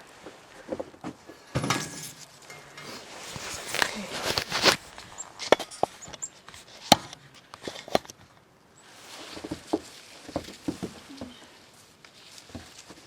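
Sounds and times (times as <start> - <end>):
soft crunching: 0.0 - 13.0
sharp clicks and knocks: 5.4 - 8.3.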